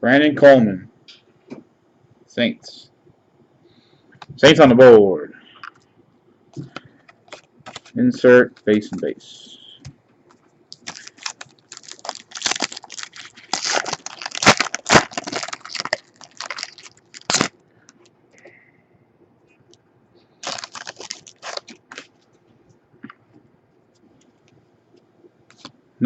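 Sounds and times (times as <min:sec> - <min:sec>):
wrapper tearing and crinkling: 0:10.7 - 0:17.6, 0:20.4 - 0:22.1.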